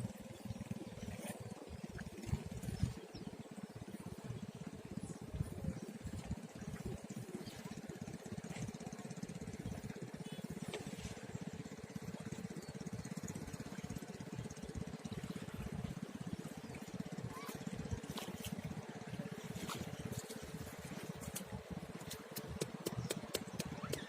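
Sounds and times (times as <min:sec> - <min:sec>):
small engine running steadily: 0:00.0 - 0:24.0.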